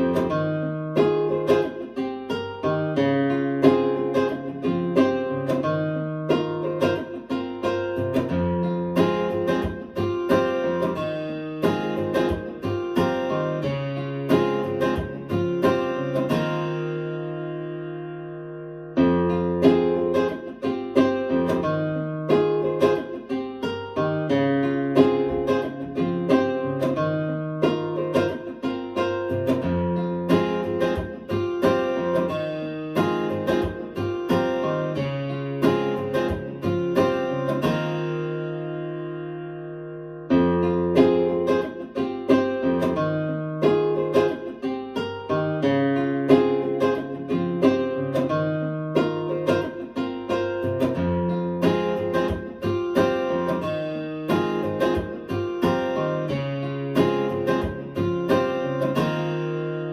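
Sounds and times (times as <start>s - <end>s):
acoustic guitar picking: 0.0s - 59.9s.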